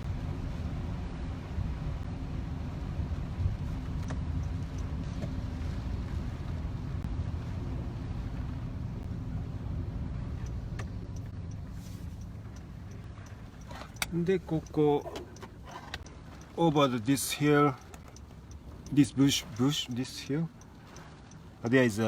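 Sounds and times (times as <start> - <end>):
car interior engine rumble: 0.0 - 22.0
tyre road noise: 0.0 - 22.0
faint clicks: 10.3 - 22.0.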